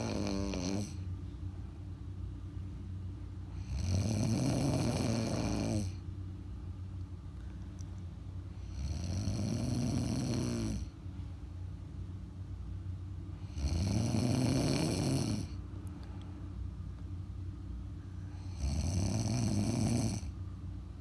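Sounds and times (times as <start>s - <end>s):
woman snoring: 0.0s - 1.1s, 3.5s - 6.0s, 8.6s - 11.0s, 13.4s - 15.6s, 18.4s - 20.3s.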